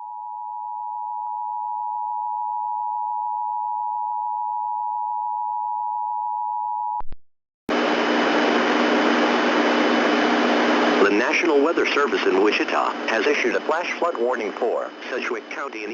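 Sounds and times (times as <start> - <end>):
steady hiss with hum: 7.7 - 15.9.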